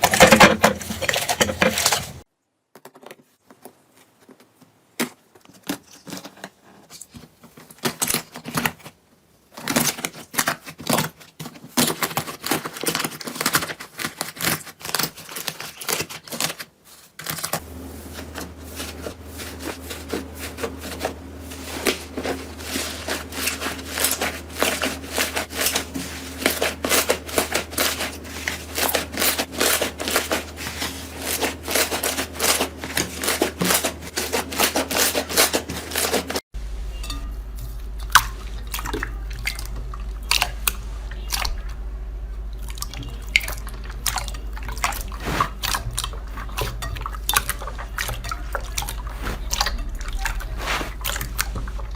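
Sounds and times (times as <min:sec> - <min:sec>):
steady low hum: 0:17.6 - 0:51.9.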